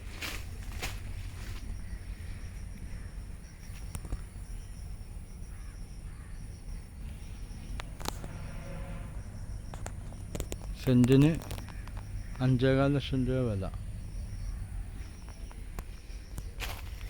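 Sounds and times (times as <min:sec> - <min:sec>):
high insect drone: 0:00.0 - 0:17.0
crows cawing: 0:01.5 - 0:04.3, 0:05.4 - 0:06.6, 0:11.2 - 0:13.0
sharp clicks: 0:09.7 - 0:12.4.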